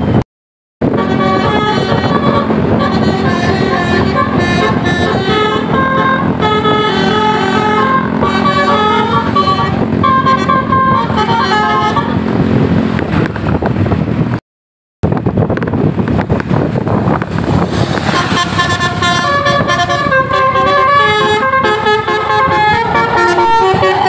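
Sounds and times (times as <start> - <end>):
multi-tone bus horn melody: 0.8 - 13.0, 17.4 - 24.0
noisy rumble: 0.8 - 14.4, 15.0 - 24.0.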